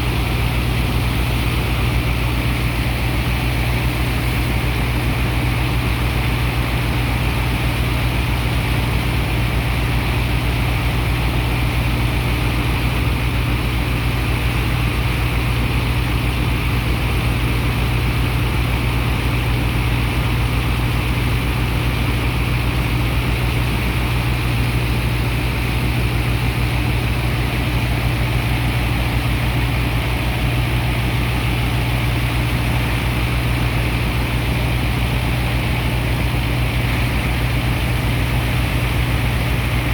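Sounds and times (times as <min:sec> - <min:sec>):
heavy diesel engine drone: 0:00.0 - 0:39.9.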